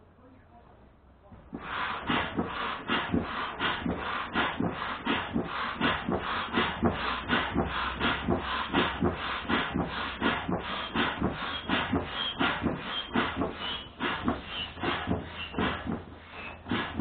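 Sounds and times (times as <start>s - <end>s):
air pump hissing strokes: 1.5s - 17.0s.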